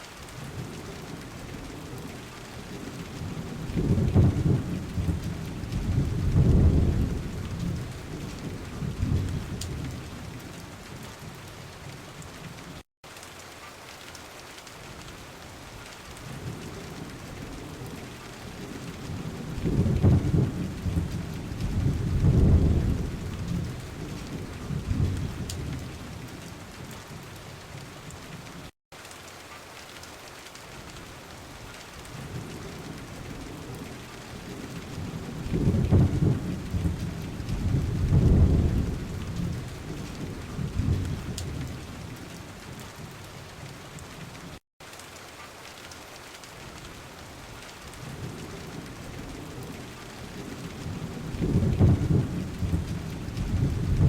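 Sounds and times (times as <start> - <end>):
steady rain: 0.0 - 54.0
thunder rumbling: 0.5 - 11.3, 16.2 - 27.0, 32.1 - 43.1, 47.9 - 54.0.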